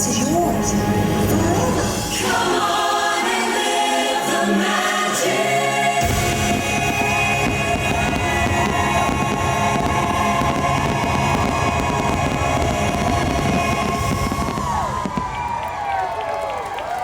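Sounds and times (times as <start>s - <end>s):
firework barrage: 6.0s - 16.1s.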